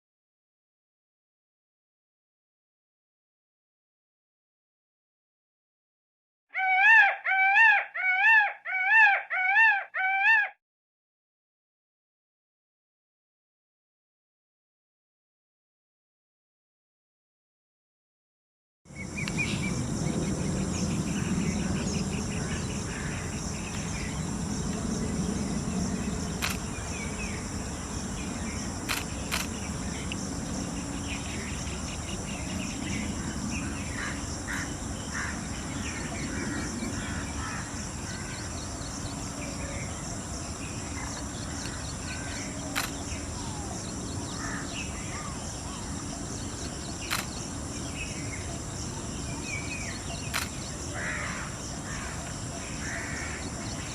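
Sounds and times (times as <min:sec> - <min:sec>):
small birds chirping: 0:18.9 - 0:53.9
high-pitched insect drone: 0:19.0 - 0:53.9
sharp clicks: 0:26.4 - 0:26.7, 0:28.9 - 0:30.2, 0:42.7 - 0:43.0, 0:47.1 - 0:47.4, 0:50.3 - 0:50.6.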